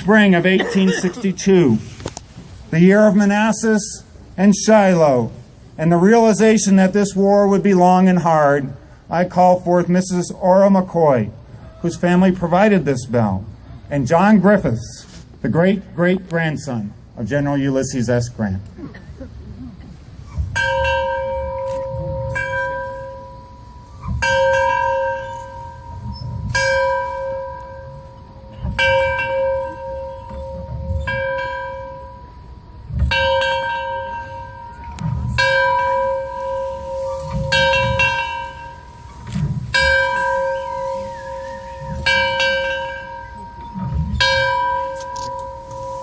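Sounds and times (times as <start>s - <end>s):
large bell tolling: 20.6s - 46.0s.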